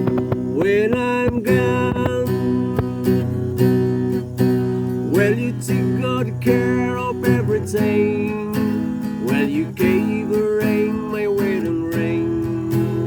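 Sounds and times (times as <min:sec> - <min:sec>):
slow ballad instrumental: 0:00.0 - 0:13.0
strummed guitar chords: 0:00.0 - 0:13.0.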